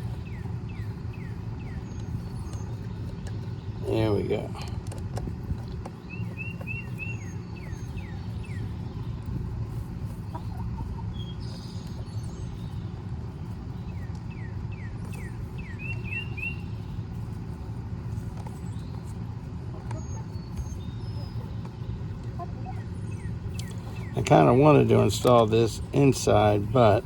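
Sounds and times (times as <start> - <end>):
steady low rumble: 0.0 - 27.0
songbird whistling notes: 14.3 - 16.6.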